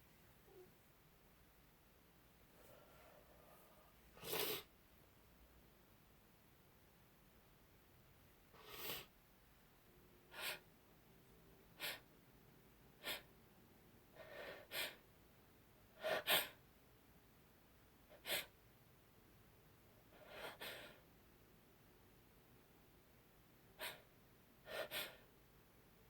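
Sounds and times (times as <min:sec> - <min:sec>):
woman sniffing: 0:04.2 - 0:04.7, 0:08.6 - 0:09.1, 0:10.3 - 0:10.7, 0:13.0 - 0:13.3, 0:20.2 - 0:21.0, 0:23.8 - 0:24.1, 0:24.7 - 0:25.3.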